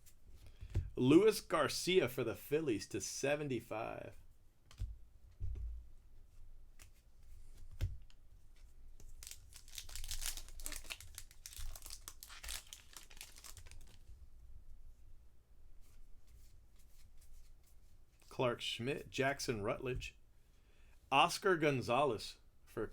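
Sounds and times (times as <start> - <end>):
wrapper tearing and crinkling: 9.1 - 14.0.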